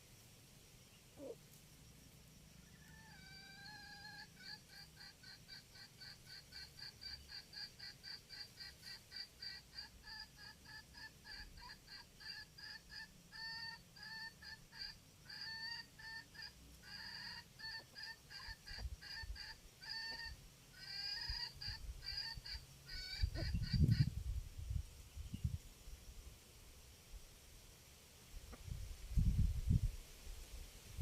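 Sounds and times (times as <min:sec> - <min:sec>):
fowl clucking: 0:01.2 - 0:01.4, 0:02.7 - 0:24.1.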